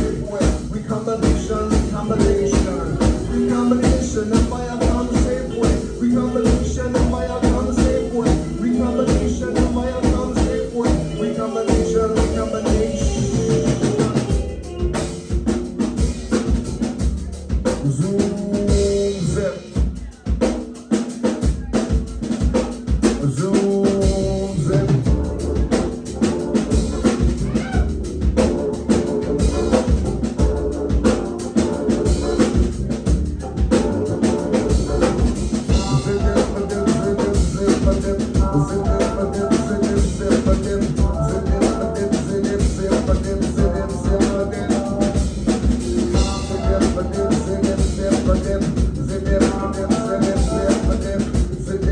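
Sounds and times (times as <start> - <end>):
drum kit steady beat: 0.0 - 51.9
live band playing: 0.0 - 51.9.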